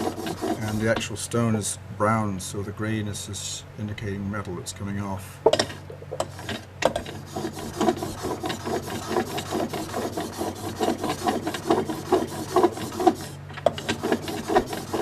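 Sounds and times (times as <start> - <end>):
blade scraping on oilstone: 0.0 - 1.1, 6.2 - 15.0.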